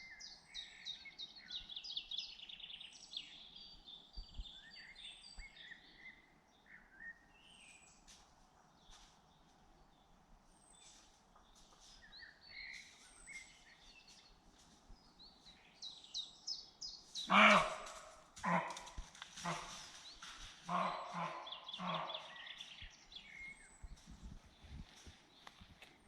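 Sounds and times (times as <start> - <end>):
songbirds singing and chirping: 0.0 - 26.0
loud harsh bark: 17.3 - 19.7, 20.7 - 22.3.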